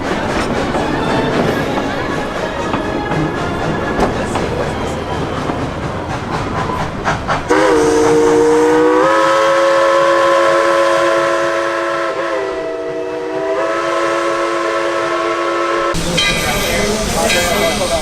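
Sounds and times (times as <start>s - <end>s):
rhythmic clatter: 0.0s - 7.5s
steam locomotive chime whistle: 6.4s - 18.0s.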